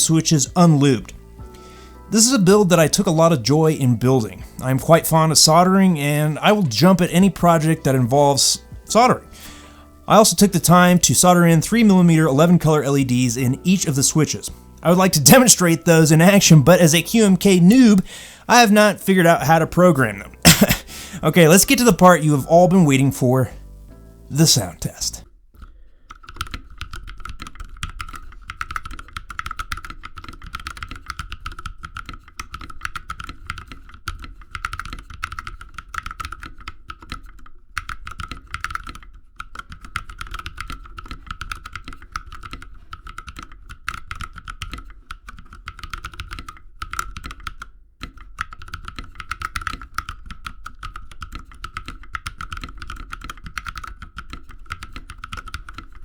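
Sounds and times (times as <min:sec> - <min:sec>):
mechanical keyboard typing: 0:25.6 - 0:56.0.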